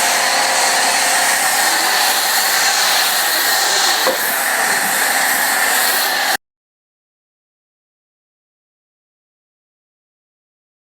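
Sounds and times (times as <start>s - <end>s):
faint motor hum: 0.0s - 6.4s
pressure washer spray hiss: 0.0s - 6.4s.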